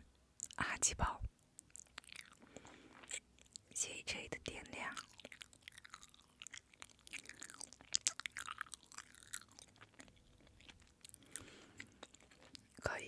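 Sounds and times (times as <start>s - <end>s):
person chewing food: 1.6s - 3.8s, 4.7s - 12.8s
wet mouth clicks: 4.8s - 10.1s.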